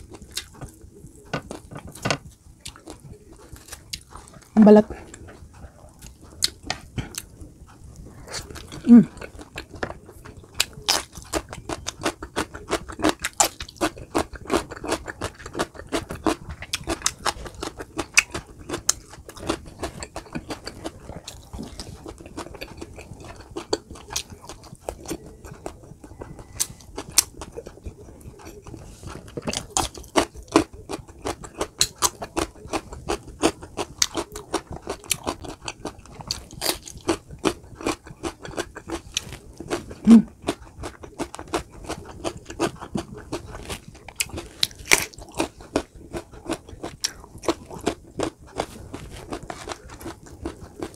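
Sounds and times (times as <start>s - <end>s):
chewing crunchy chicken: 0.0s - 50.9s.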